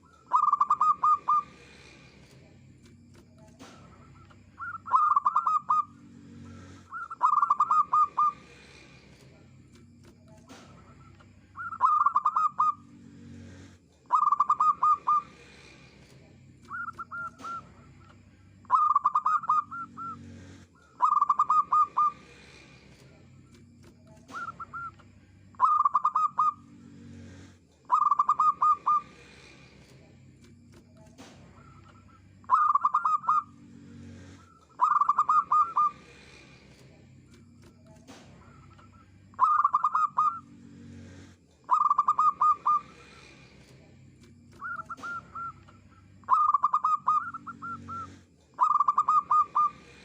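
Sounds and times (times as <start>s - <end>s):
dove cooing: 0.0s - 2.0s, 3.6s - 8.9s, 10.5s - 15.7s, 16.7s - 22.6s, 24.2s - 26.7s, 27.8s - 29.5s, 31.6s - 33.6s, 34.2s - 36.4s, 38.1s - 40.5s, 41.1s - 43.3s, 44.6s - 50.0s.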